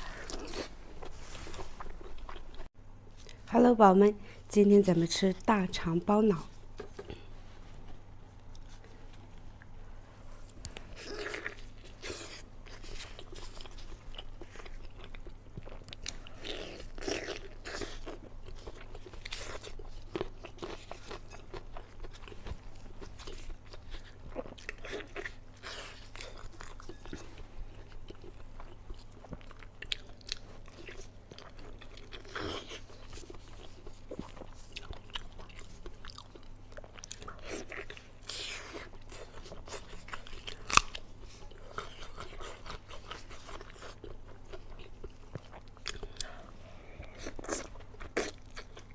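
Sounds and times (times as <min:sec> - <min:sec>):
steady low hum: 0:00.0 - 0:48.9
crunchy biting and chewing: 0:10.8 - 0:46.4.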